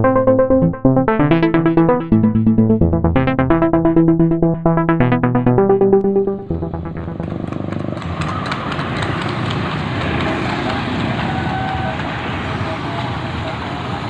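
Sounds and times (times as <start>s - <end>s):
street traffic: 6.4s - 14.0s
busy clatter: 7.2s - 14.0s.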